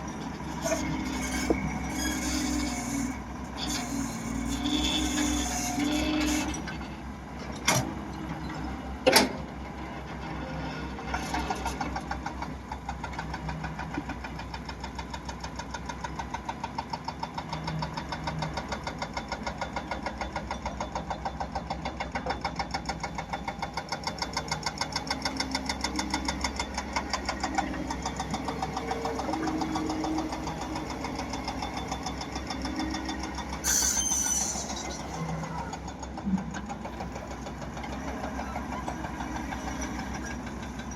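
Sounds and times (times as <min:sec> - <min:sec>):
diesel engine pulsing: 0:22.2 - 0:40.9.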